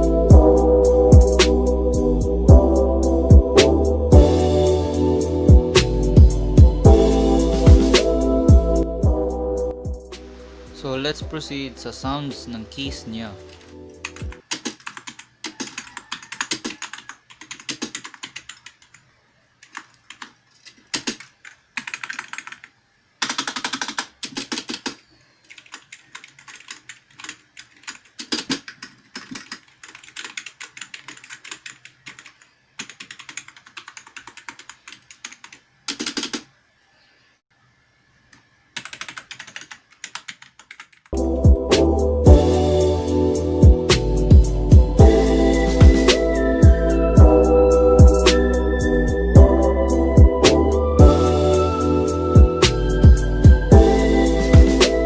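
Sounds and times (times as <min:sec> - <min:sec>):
keyboard typing: 0:13.3 - 0:36.5, 0:38.3 - 0:41.2.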